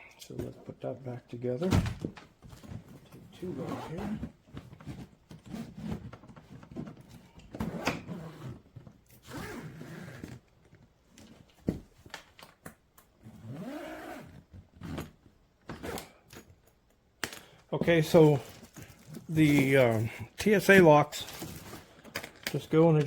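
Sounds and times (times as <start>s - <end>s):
zipper rasping: 3.4s - 6.1s, 7.6s - 10.4s, 13.2s - 16.2s.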